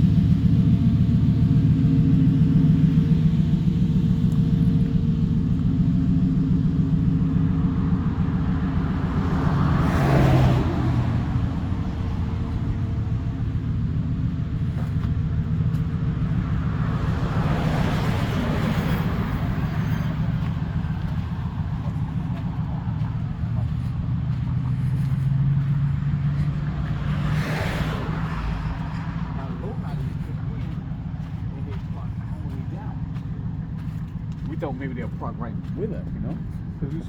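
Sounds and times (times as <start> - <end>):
car engine idling: 0.0 - 37.0
vehicles passing by: 0.0 - 37.0.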